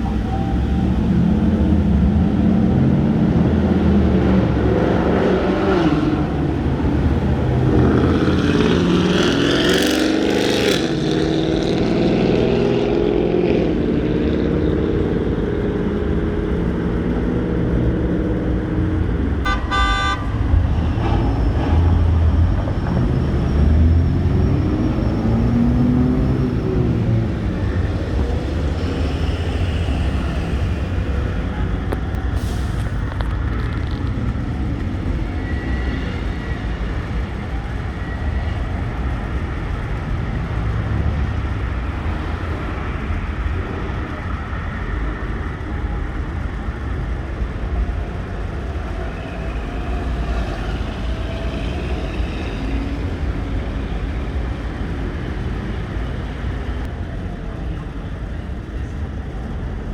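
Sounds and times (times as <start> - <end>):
vehicle engines passing: 0.0 - 59.9
car horn honk: 19.4 - 20.6.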